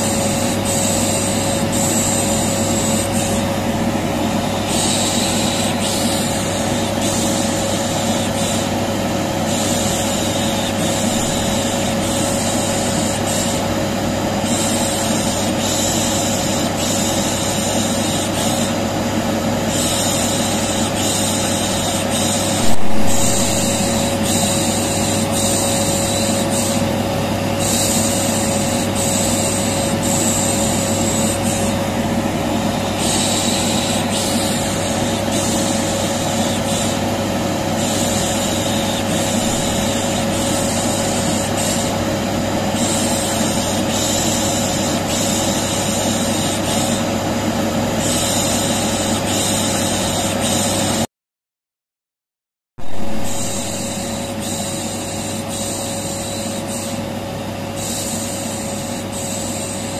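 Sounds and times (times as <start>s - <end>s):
vacuum cleaner hum: 0.0s - 51.0s, 52.8s - 59.9s
sharp knock: 22.6s - 24.6s.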